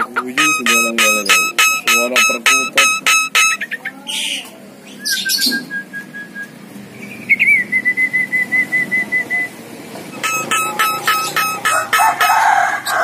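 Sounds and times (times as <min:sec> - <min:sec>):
bird whistling: 0:00.4 - 0:03.7, 0:10.2 - 0:11.9
harsh bird rasp: 0:10.2 - 0:13.0.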